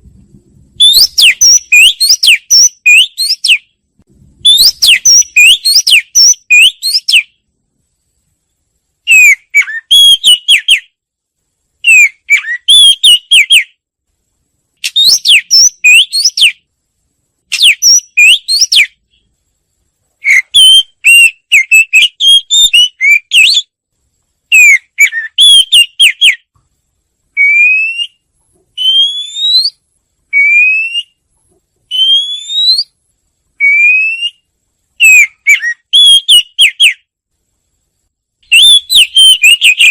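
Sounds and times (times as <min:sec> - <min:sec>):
bird rising whistles: 0:00.8 - 0:03.7, 0:04.4 - 0:07.3, 0:14.8 - 0:16.6, 0:20.3 - 0:23.7, 0:28.8 - 0:29.8, 0:30.4 - 0:31.2, 0:31.9 - 0:33.0, 0:38.5 - 0:39.9
wagtail twittering song: 0:00.8 - 0:03.8, 0:04.4 - 0:07.4, 0:09.1 - 0:11.0, 0:11.8 - 0:13.8, 0:14.8 - 0:16.6, 0:17.5 - 0:19.2, 0:20.2 - 0:23.7, 0:24.5 - 0:26.5, 0:28.8 - 0:29.8, 0:31.9 - 0:33.0, 0:33.6 - 0:37.1, 0:38.5 - 0:39.9.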